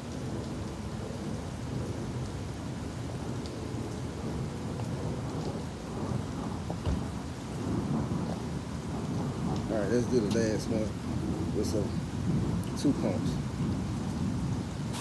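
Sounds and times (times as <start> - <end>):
rain falling: 0.0 - 15.0
thump: 6.8 - 7.1.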